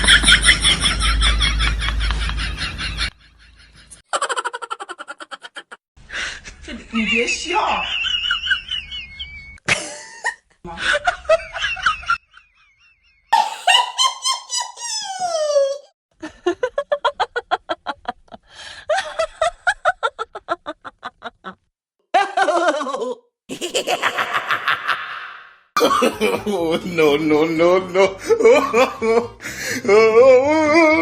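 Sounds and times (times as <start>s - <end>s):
rhythmic ha-ha laughing: 0.0s - 5.8s, 9.7s - 15.8s, 23.5s - 29.6s
laughter: 0.0s - 29.6s.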